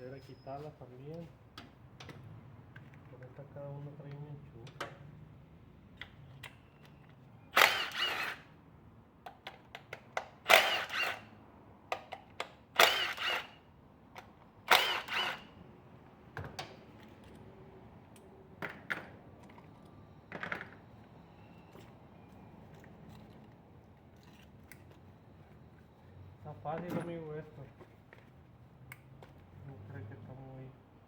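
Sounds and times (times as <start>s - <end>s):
cordless power tool whining: 7.6s - 8.5s, 10.5s - 11.2s, 12.8s - 13.6s, 14.7s - 15.5s.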